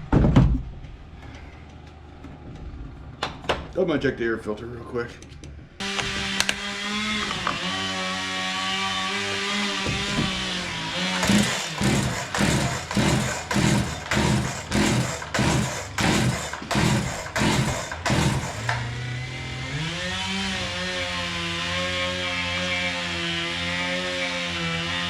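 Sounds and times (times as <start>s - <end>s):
engine running: 9.9s - 20.2s.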